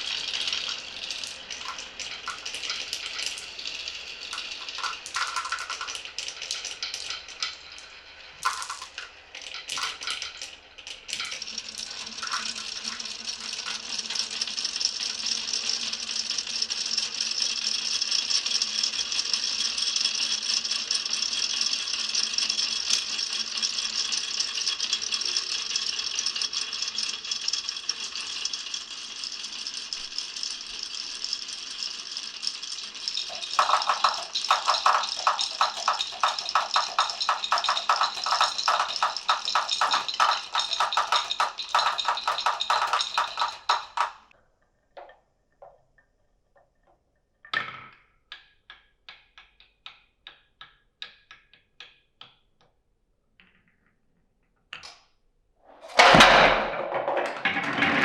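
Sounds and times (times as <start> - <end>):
marbles rolling and rattling: 0.0 - 16.5, 22.6 - 44.3
fast even clicking: 33.2 - 44.2.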